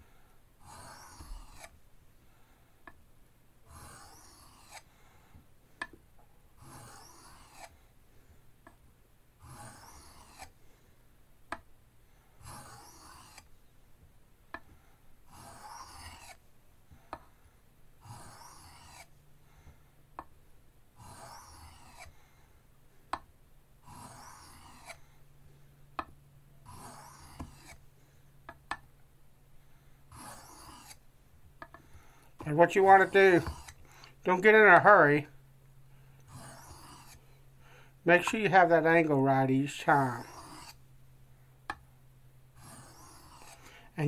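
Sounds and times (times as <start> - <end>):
knife rasping on whetstone: 0.6 - 1.7, 3.7 - 4.9, 6.6 - 7.8, 9.4 - 10.5, 12.4 - 13.5, 15.3 - 16.4, 18.0 - 19.1, 21.0 - 22.1, 23.8 - 25.0, 26.6 - 27.8, 30.1 - 31.0, 32.7 - 33.8, 36.3 - 37.2, 39.9 - 40.8, 42.6 - 43.6.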